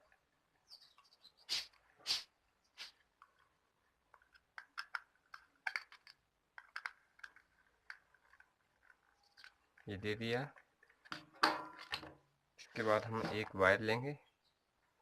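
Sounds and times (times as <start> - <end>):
small plastic and metal parts clicking: 4.1 - 9.9.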